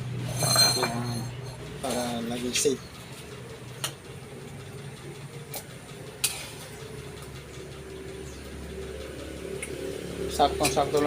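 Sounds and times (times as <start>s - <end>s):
low mechanical hum: 0.0s - 11.0s
kitchenware clinking: 0.3s - 1.6s.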